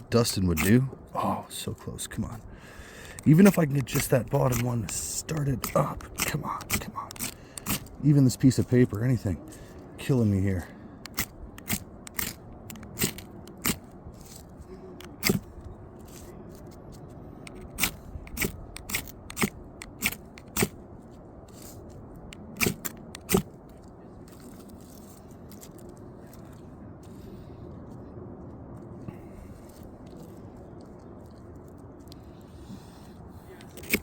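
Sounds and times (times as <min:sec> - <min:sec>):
ferro rod scraping: 0:11.0 - 0:14.5.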